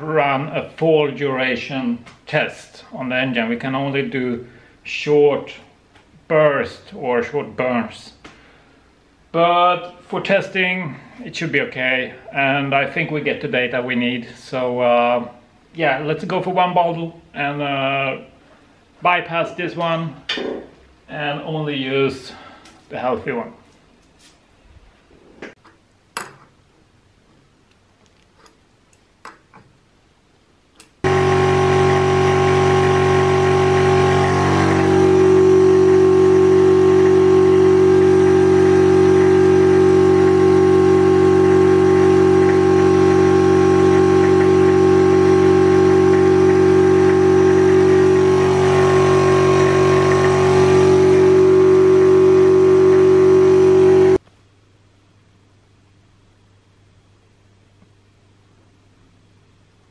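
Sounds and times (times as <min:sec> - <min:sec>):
air compressor running: 0:31.0 - 0:54.2.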